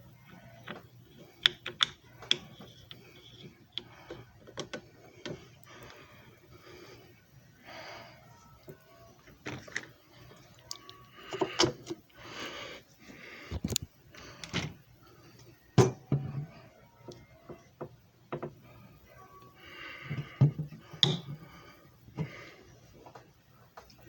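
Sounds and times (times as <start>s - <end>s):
objects being handled clicking: 0.2s - 6.0s.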